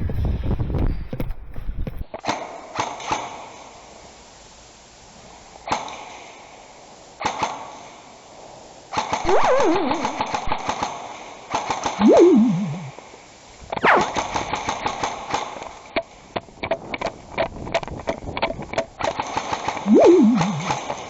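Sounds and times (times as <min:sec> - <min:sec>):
wavering cry: 0:09.3 - 0:10.7, 0:12.0 - 0:12.9, 0:19.9 - 0:20.8.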